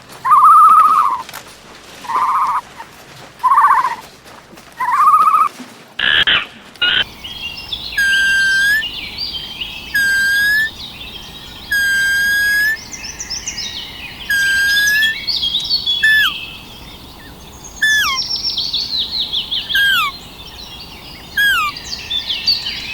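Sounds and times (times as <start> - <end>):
high bird chirps: 0.3 - 1.2, 6.9 - 22.9
bird whistled note: 7.2 - 20.3, 21.2 - 22.9.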